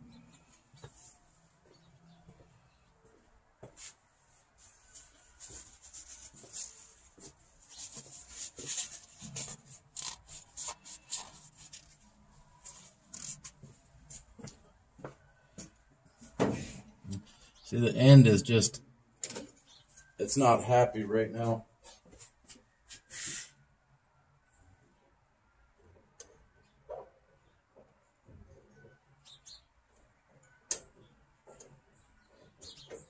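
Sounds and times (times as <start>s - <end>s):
rubbing and scraping on metal cable: 3.8s - 14.2s.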